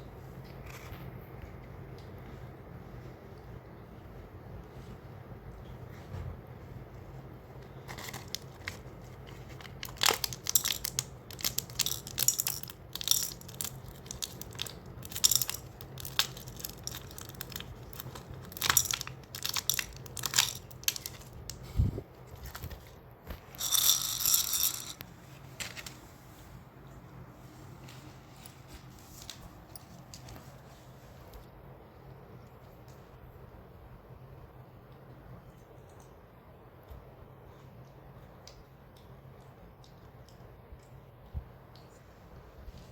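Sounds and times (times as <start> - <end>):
plastic wrapper crinkling and tearing: 7.8 - 21.6.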